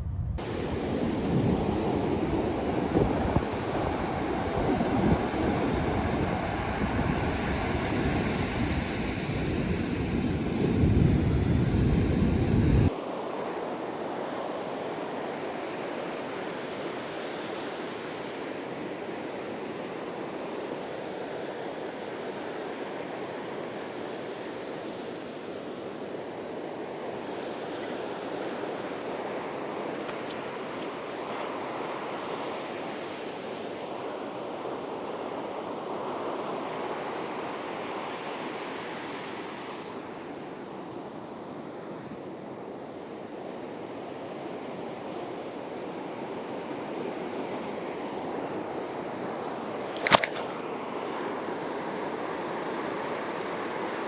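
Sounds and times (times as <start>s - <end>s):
low rumble: 0.0s - 0.5s
ocean surf breaking on beach: 0.4s - 54.0s.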